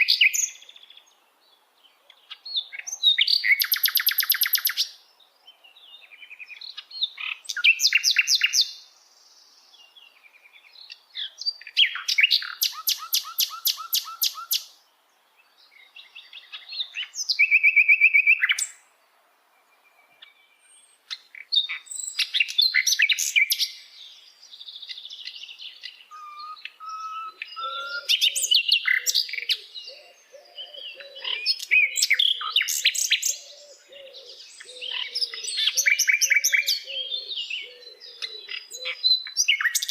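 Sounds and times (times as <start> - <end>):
lower soft repeated bird call: 0.0 - 39.9
flycatcher singing trills: 2.4 - 5.0, 10.8 - 14.8, 24.6 - 39.9.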